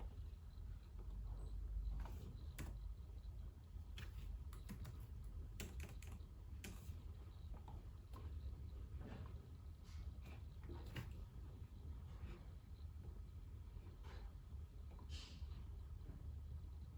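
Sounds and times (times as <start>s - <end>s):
faint low hum: 0.0s - 16.9s
keyboard typing clicks: 4.0s - 6.9s.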